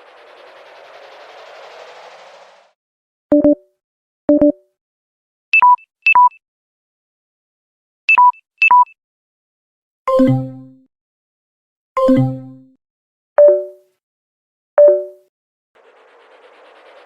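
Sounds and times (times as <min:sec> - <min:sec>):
phone warning beeps: 0:03.3 - 0:03.6, 0:05.6 - 0:06.4, 0:08.1 - 0:09.0.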